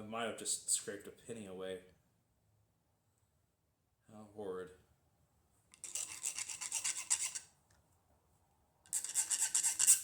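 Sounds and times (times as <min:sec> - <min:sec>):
metal file rasping on wire: 0:05.8 - 0:07.5, 0:08.9 - 0:10.0.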